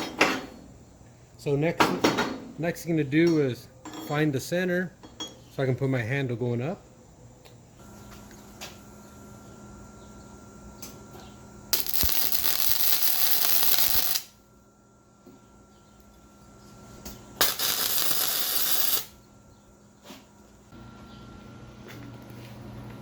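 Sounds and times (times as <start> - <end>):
welder crackling hiss: 11.7 - 14.4, 17.4 - 19.2.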